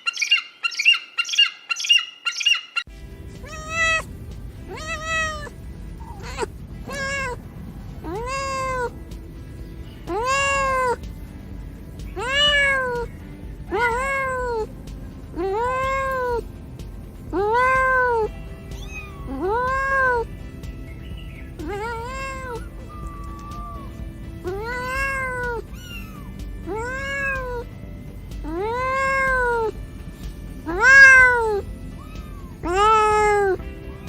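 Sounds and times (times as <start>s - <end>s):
cat meowing: 3.4s - 7.4s, 8.0s - 9.1s, 10.0s - 11.0s, 12.1s - 14.7s, 15.3s - 16.6s, 17.3s - 20.4s, 21.4s - 27.8s, 28.4s - 29.8s, 30.6s - 34.0s.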